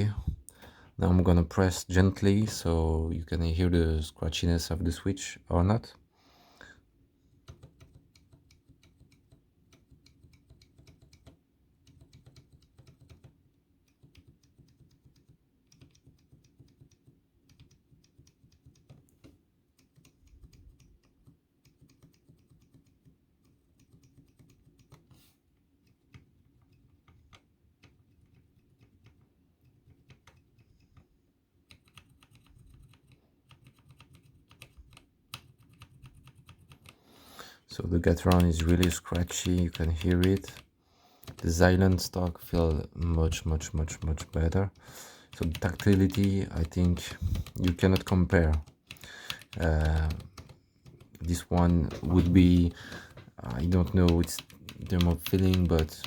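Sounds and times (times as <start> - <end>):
keyboard switches clicking: 31.7 - 37.0, 37.8 - 56.0.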